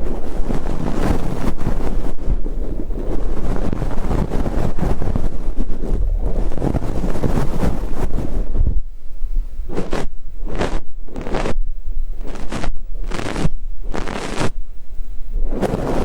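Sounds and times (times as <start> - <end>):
ear brush swishing on microphone: 0.0 - 8.8, 9.7 - 14.6, 15.4 - 16.0.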